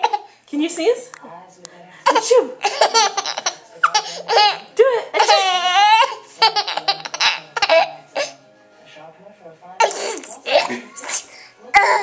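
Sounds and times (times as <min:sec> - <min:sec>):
baby laughing: 0:02.1 - 0:08.4.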